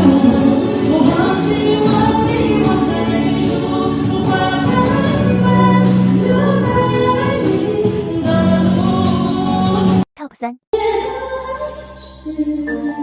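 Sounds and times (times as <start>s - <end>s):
backing music: 0.0s - 10.0s
person singing: 0.0s - 10.0s.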